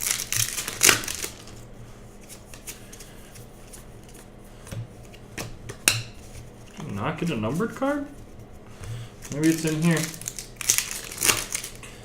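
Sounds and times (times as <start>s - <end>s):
trading cards being handled: 0.0s - 11.8s.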